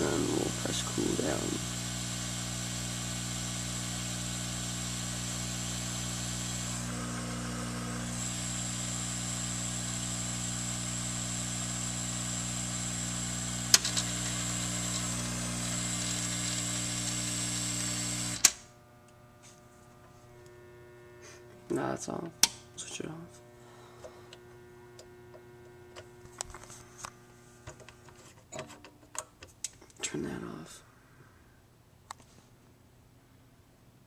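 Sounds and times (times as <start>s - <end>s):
hot-air blower whining: 0.0s - 22.0s
faint mains hum: 0.0s - 34.0s.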